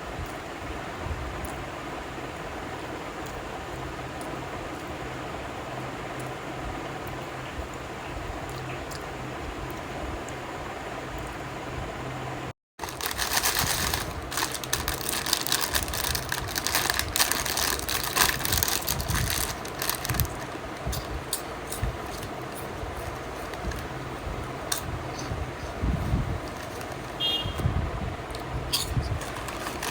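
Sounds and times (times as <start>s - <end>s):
crunchy food being chewed: 12.8s - 27.2s, 28.3s - 29.9s.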